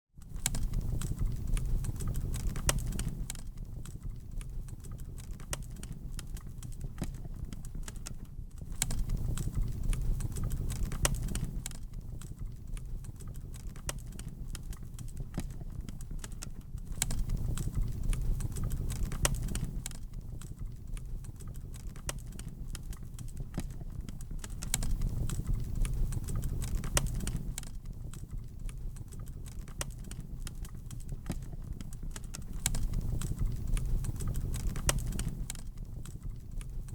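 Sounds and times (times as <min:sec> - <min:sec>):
wood fire popping and snapping: 0:00.2 - 0:36.9
low rumble of flames: 0:00.3 - 0:36.9.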